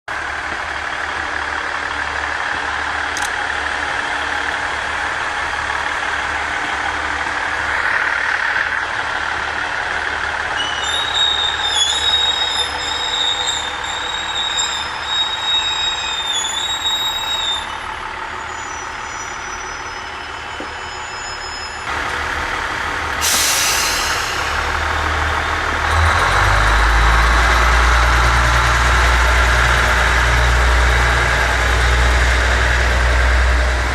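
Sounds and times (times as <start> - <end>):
diesel engines rumbling: 0.1 - 33.9
wavering metallic squeal: 10.6 - 21.9
hiss of air: 23.2 - 25.0.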